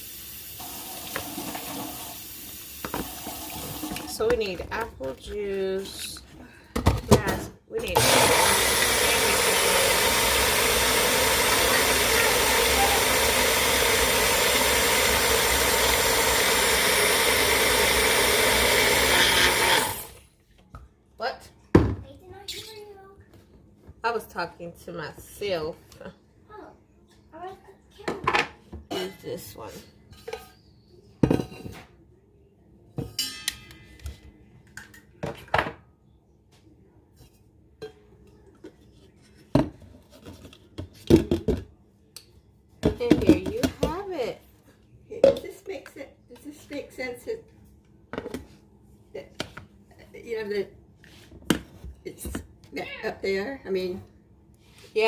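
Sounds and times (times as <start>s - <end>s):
electric appliance motor running: 8.0s - 20.2s
dishes clinking: 30.0s - 31.9s, 33.0s - 34.2s.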